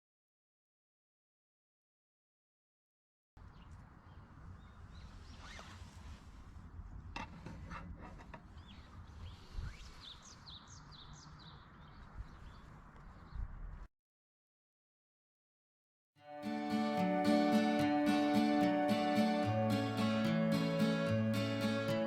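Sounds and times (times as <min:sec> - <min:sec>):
bird chirping: 0:08.6 - 0:13.5.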